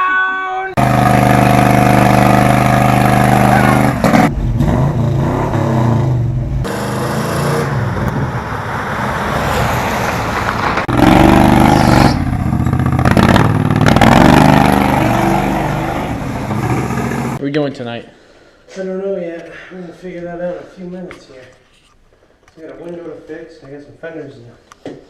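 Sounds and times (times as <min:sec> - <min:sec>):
car engine revving: 0:00.8 - 0:17.4.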